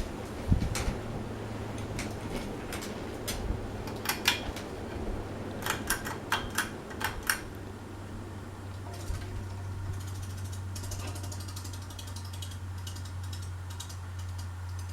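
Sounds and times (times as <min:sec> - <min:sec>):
low hum: 0:00.0 - 0:14.9
light sharp clicks and taps: 0:08.7 - 0:14.9.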